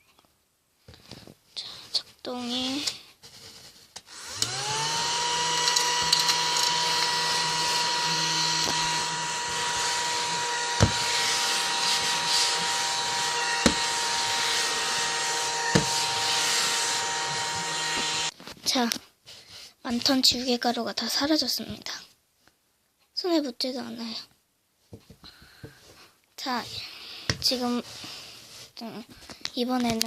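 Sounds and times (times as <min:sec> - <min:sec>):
small vacuum motor whining: 0:04.1 - 0:18.3.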